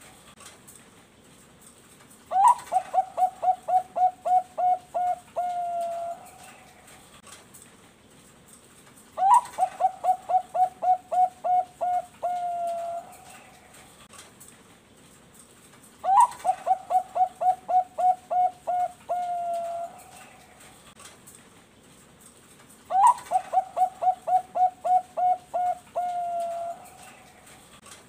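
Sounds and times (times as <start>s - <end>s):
dove cooing: 2.3s - 7.0s, 9.2s - 13.9s, 16.0s - 20.8s, 22.9s - 27.8s.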